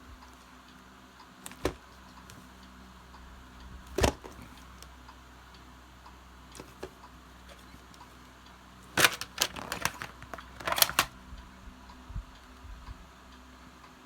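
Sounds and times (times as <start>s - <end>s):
faint steady hum: 0.0s - 14.0s
plastic case clicking and knocking: 1.5s - 1.8s, 3.9s - 4.5s, 6.6s - 7.8s, 9.0s - 11.1s.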